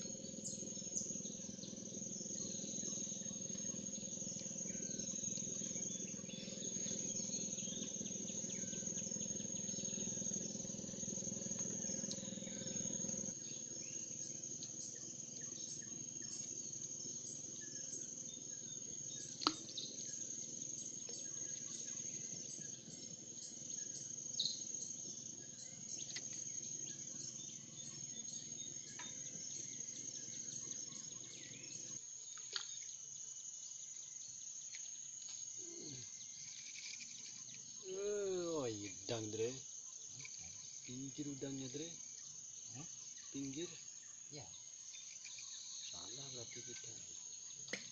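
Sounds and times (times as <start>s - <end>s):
low hum: 0.0s - 32.0s
bird chirps: 0.0s - 33.0s, 35.6s - 47.9s
high-pitched insect drone: 0.0s - 47.9s.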